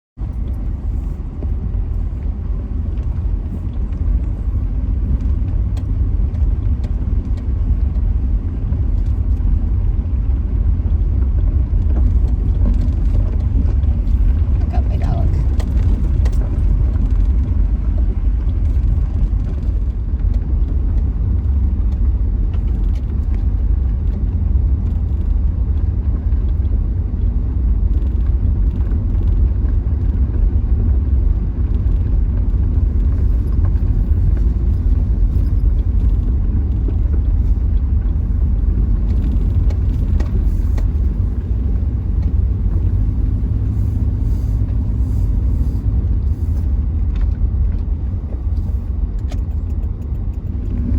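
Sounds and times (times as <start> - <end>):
car road and engine rumble: 0.2 - 50.9.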